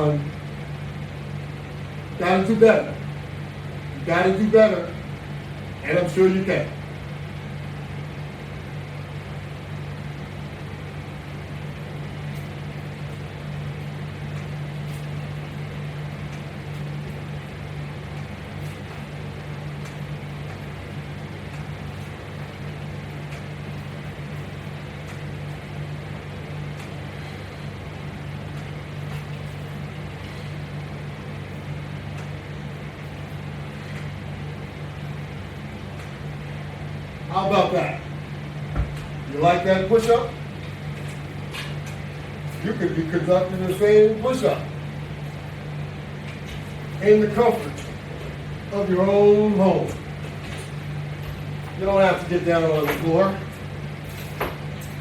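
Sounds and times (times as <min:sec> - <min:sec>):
low background hum: 0:00.0 - 0:55.0.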